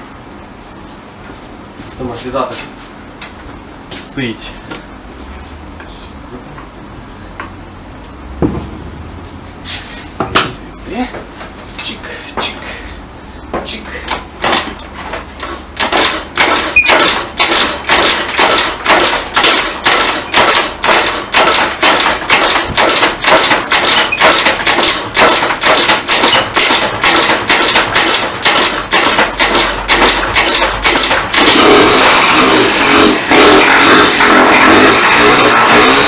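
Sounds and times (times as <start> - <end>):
rapid sharp knocks: 13.6 - 36.0.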